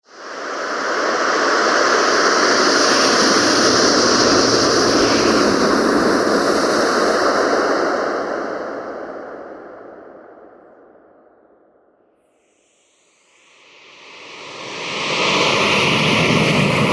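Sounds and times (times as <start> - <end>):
strong wind gust: 0.2 - 11.1, 13.9 - 16.9.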